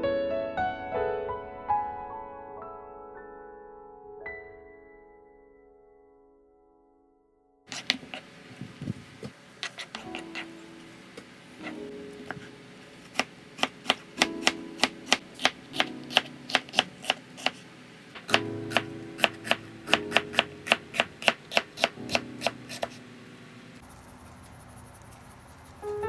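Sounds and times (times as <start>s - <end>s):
knife chopping on cutting board: 7.7s - 8.3s, 9.2s - 10.6s, 11.2s - 17.6s, 18.2s - 23.0s
quiet background music: 9.8s - 23.9s, 25.8s - 26.0s.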